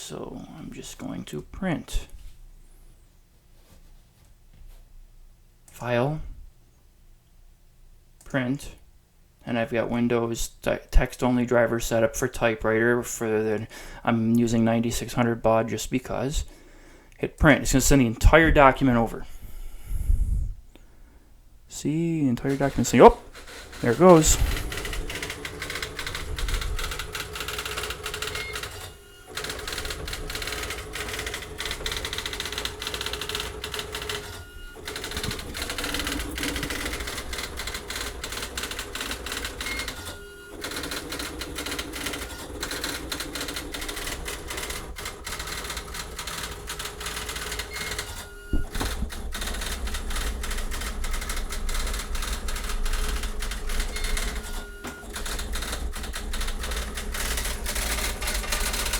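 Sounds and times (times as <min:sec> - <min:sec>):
electronic typewriter clatter: 0:22.4 - 0:58.9.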